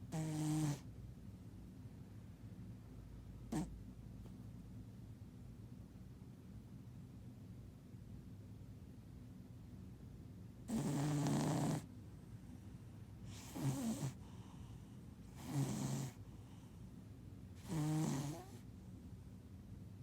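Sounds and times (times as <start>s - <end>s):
cat snoring: 0.1s - 0.9s, 3.5s - 3.7s, 10.7s - 11.9s, 13.3s - 16.6s, 17.6s - 18.6s.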